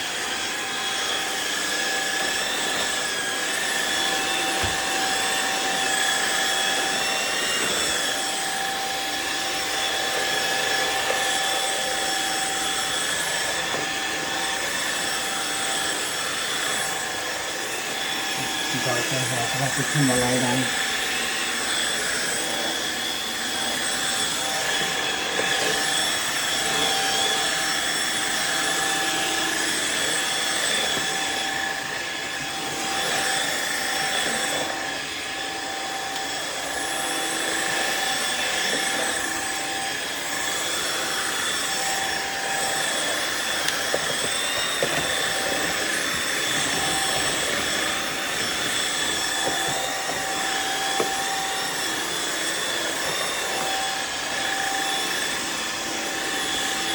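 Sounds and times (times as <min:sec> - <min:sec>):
floor washer motor whining: 0:00.0 - 0:56.9.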